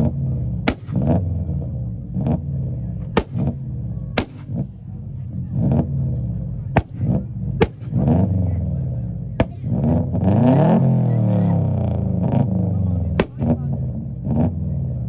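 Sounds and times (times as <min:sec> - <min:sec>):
car engine revving over idle: 0:00.0 - 0:15.0
sharp bangs: 0:00.6 - 0:01.3, 0:03.0 - 0:04.8, 0:06.7 - 0:08.4, 0:10.5 - 0:13.7.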